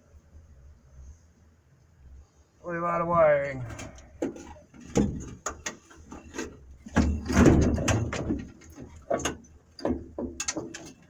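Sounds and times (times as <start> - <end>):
wiring handling clicks and knocks: 3.7 - 11.0.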